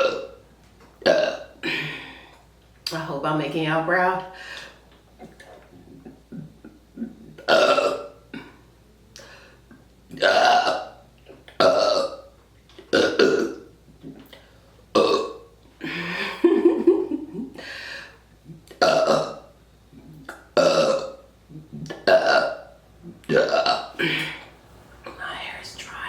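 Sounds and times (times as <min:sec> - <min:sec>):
person burping: 0:00.0 - 0:00.4, 0:01.0 - 0:02.3, 0:05.2 - 0:08.6, 0:10.1 - 0:12.3, 0:12.9 - 0:14.3, 0:14.9 - 0:16.3, 0:18.4 - 0:24.5.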